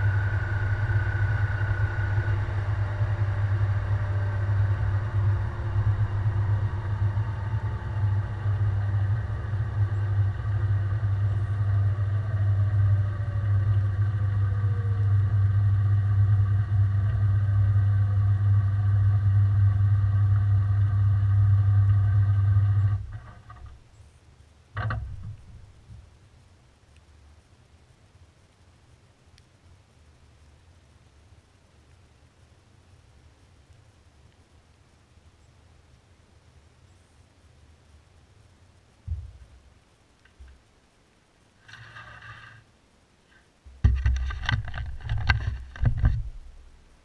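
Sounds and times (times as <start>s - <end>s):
washing machine spinning: 0.0s - 22.8s.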